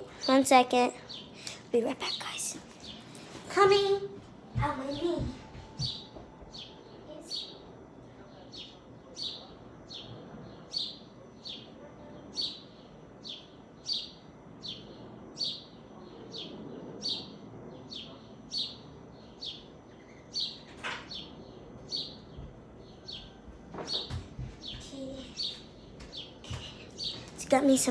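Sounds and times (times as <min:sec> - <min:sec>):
bird chirping: 0:08.4 - 0:27.9.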